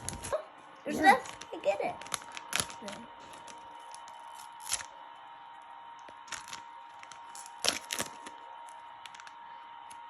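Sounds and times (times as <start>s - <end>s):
plastic packaging clicks and crackles: 1.2s - 5.0s, 6.0s - 10.0s.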